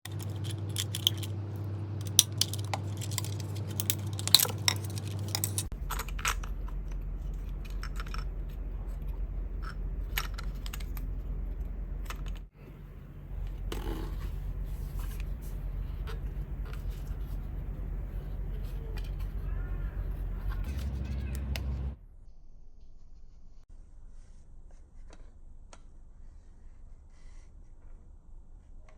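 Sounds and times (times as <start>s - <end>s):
steady low hum: 0.1s - 22.7s.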